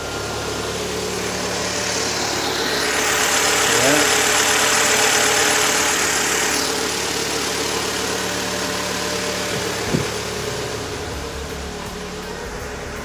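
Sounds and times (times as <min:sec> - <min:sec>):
car engine idling: 0:00.0 - 0:13.0
short knock: 0:09.5 - 0:10.2.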